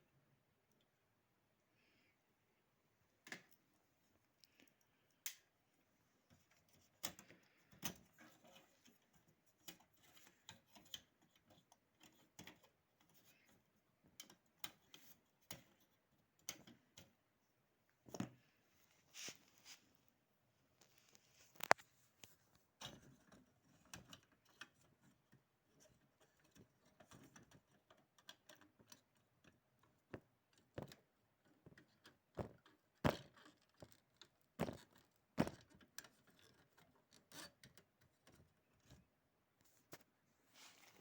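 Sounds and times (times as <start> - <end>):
small parts clicking and knocking: 22.8 - 39.0.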